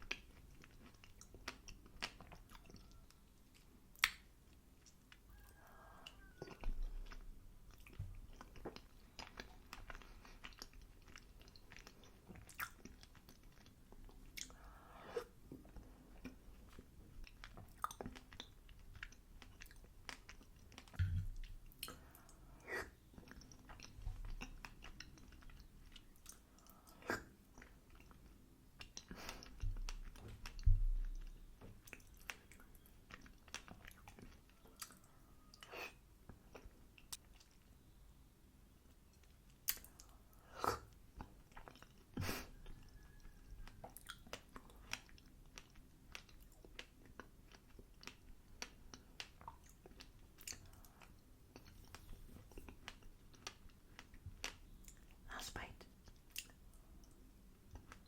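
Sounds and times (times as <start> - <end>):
chewing crunchy food: 0.0 - 37.9, 38.8 - 58.0
wet mouth clicks: 3.5 - 5.2, 39.5 - 58.0
dull low thumps: 21.0 - 21.4.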